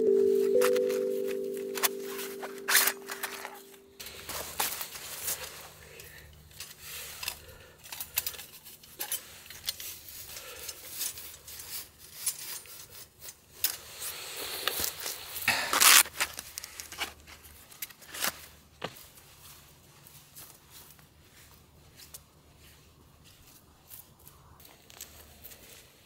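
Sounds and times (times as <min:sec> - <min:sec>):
background music: 0:00.0 - 0:04.0
camping gear clinking and rustling: 0:00.3 - 0:14.1, 0:15.8 - 0:26.0.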